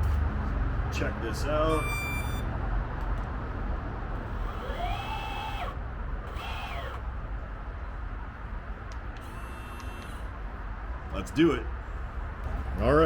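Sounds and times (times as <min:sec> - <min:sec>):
electric motor whine: 0:04.2 - 0:07.1, 0:09.2 - 0:10.3.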